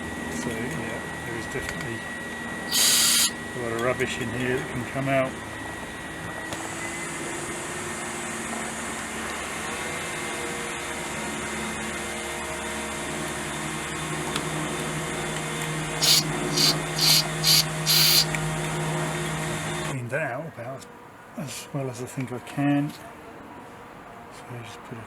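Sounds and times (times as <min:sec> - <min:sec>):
motor hum: 0:02.7 - 0:03.4, 0:15.7 - 0:19.9
short hissing sprays: 0:02.7 - 0:03.4, 0:16.0 - 0:18.3.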